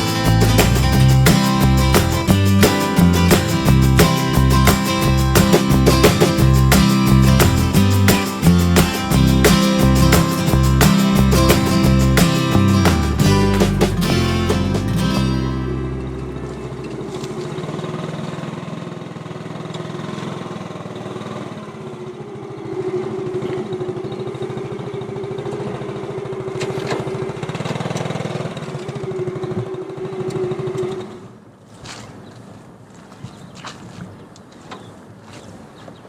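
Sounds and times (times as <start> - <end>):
small motorbike engine running: 15.7 - 31.3.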